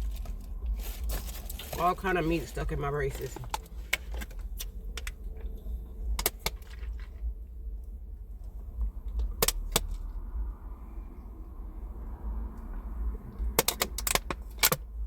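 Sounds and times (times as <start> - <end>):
car cabin low rumble: 0.0 - 15.0.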